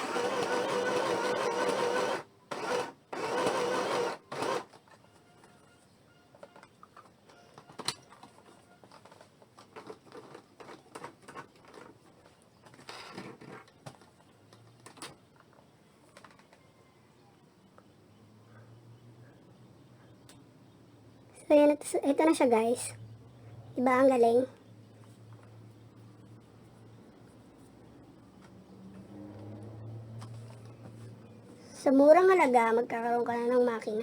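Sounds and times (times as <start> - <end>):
electric sewing machine running: 0.0 - 4.8.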